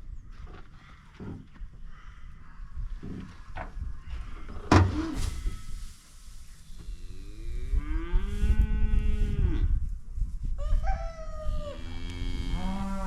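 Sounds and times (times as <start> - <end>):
cattle mooing: 11.8 - 13.0.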